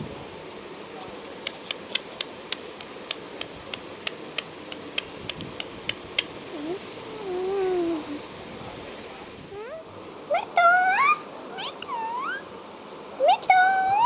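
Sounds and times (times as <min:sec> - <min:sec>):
sharp irregular clicks: 0:01.0 - 0:06.3.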